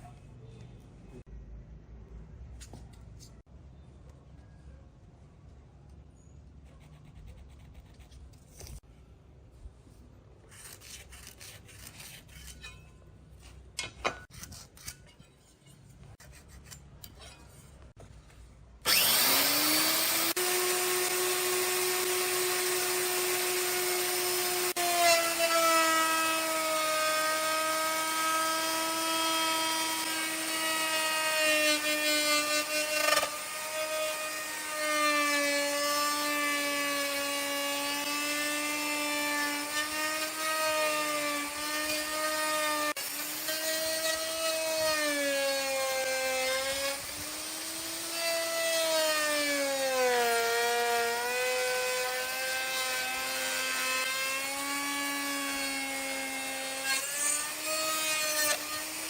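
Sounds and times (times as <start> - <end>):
power tool whining: 18.8 - 59.0.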